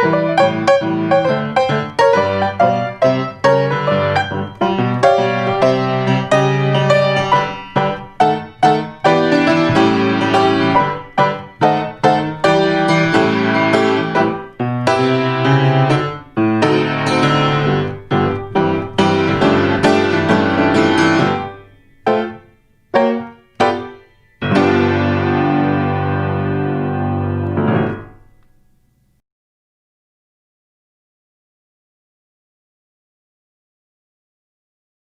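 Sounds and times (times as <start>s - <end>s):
piano chords: 0.0s - 28.9s.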